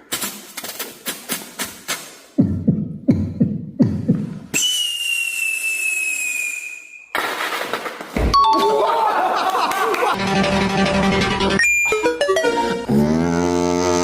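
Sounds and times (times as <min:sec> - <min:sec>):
long high whistle: 0:04.5 - 0:07.1.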